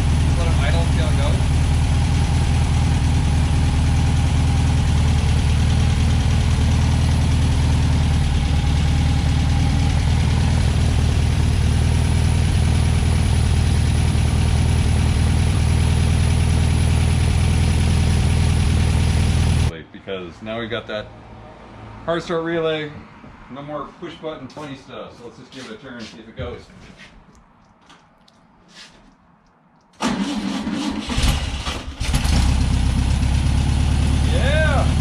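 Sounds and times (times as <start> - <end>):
car engine idling: 0.0 - 19.7, 29.9 - 35.0.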